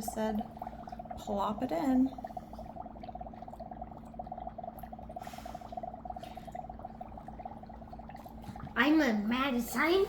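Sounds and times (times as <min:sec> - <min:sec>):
dry ice bubbling in liquid: 0:00.0 - 0:10.0.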